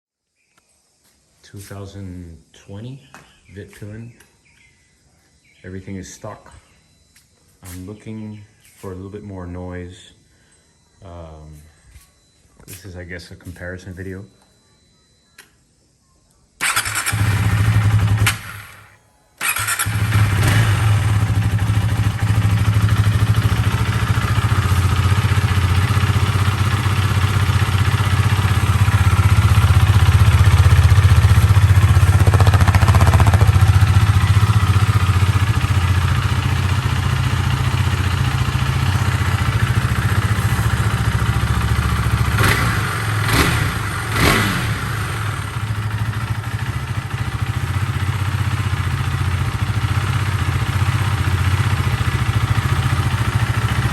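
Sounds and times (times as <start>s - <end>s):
motorcycle engine idling: 16.6s - 53.9s.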